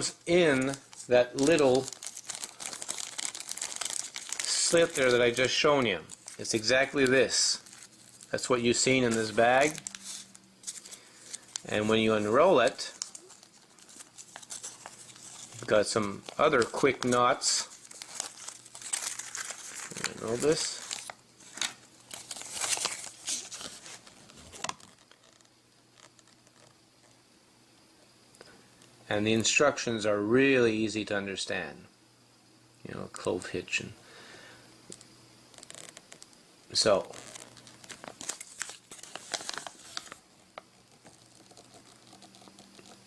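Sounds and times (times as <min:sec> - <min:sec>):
paper rustling and crinkling: 0:00.0 - 0:26.7, 0:35.5 - 0:36.2, 0:36.8 - 0:43.0.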